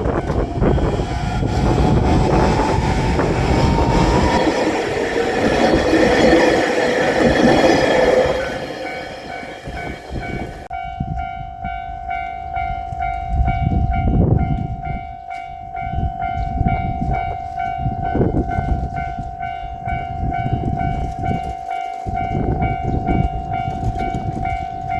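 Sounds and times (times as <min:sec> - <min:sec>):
train wheels clattering over rail joints: 0:00.2 - 0:10.7
level crossing alarm bell: 0:02.0 - 0:24.9.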